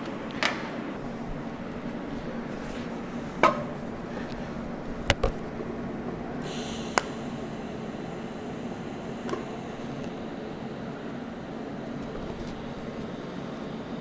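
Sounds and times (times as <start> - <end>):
low shop hum: 0.0 - 14.0
brief hiss: 6.4 - 7.5.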